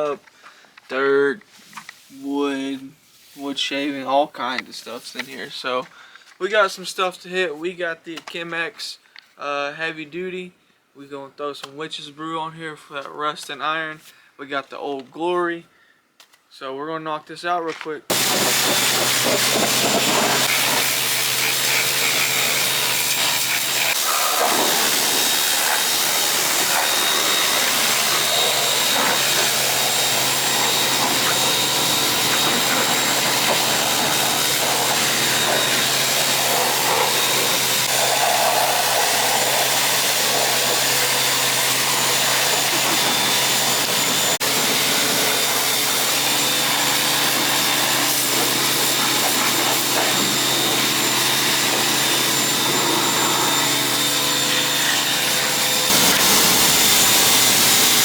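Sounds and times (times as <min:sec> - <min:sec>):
hiss of spray: 0:18.1 - 0:32.1, 0:36.2 - 0:40.8
pressure washer motor humming: 0:18.1 - 0:58.0.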